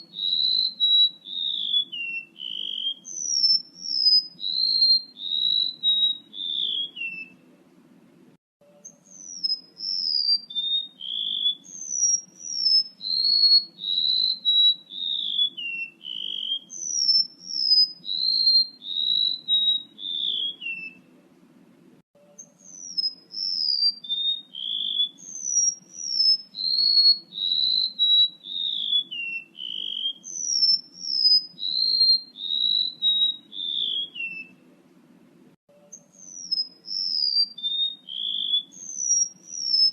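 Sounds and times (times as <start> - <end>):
bird song whistled notes: 0.0 - 7.5, 8.6 - 21.1, 22.2 - 34.7, 35.7 - 39.9
faint low hum: 5.9 - 9.2, 20.0 - 23.5, 34.2 - 36.1.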